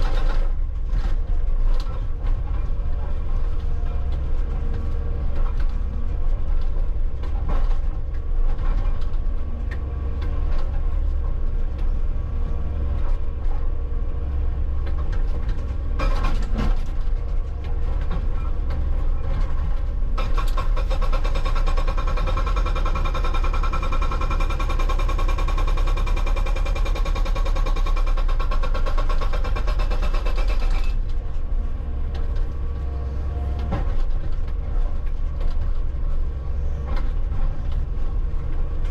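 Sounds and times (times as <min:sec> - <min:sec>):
hydraulic rock breaker hammering: 0:00.0 - 0:00.8, 0:15.9 - 0:17.0, 0:20.2 - 0:31.1
excavator engine running: 0:00.0 - 0:38.9.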